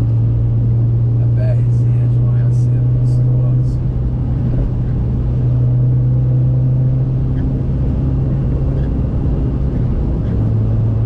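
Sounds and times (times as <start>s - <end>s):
low engine drone: 0.0s - 11.0s
road rumble: 0.0s - 11.0s.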